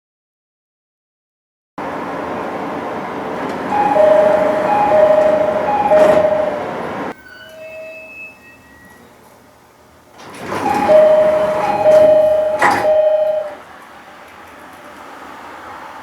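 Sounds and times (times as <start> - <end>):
doors knocking shut: 1.8 - 7.1, 10.3 - 13.6
sliding doors rushing: 1.8 - 7.2, 10.0 - 16.0
two-note door chime: 3.3 - 9.1, 10.4 - 13.6.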